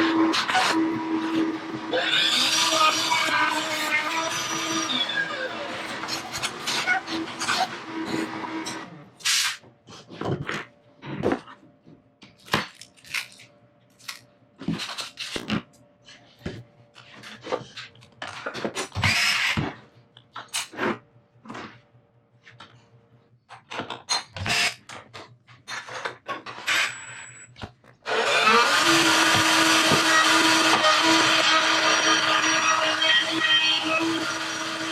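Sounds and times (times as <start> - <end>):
power tool running: 0.0 - 9.2, 28.0 - 34.9.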